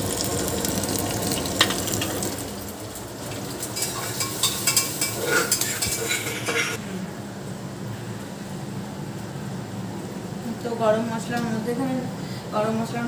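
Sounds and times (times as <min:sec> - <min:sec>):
spices sizzling in hot ghee: 0:00.0 - 0:06.6
spoon scraping metal pan: 0:03.8 - 0:06.8.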